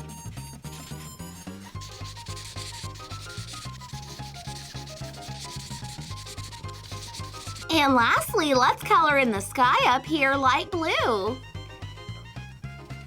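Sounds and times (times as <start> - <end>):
light background music: 0.0 - 13.0
marker rubbing on paper: 1.7 - 8.3.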